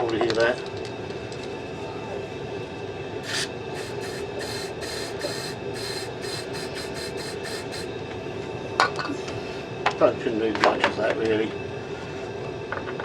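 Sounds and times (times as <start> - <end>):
gas boiler humming: 0.0 - 13.0
aerosol spray hissing bursts: 3.2 - 7.9.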